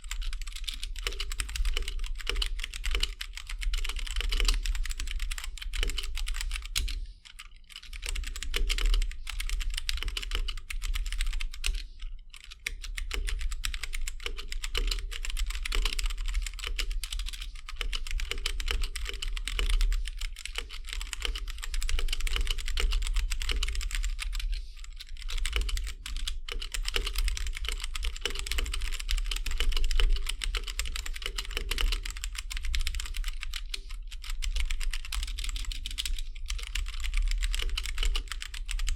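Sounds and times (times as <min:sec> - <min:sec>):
typing on mechanical keyboard: 0:00.0 - 0:38.9.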